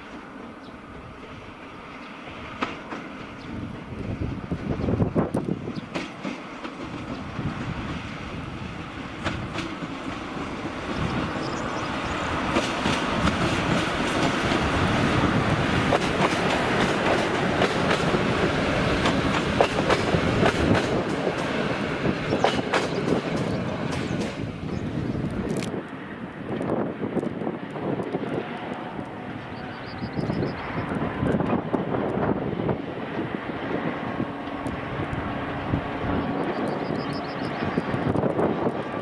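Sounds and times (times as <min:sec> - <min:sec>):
train wheels clicking over rail joints: 0:02.5 - 0:32.3.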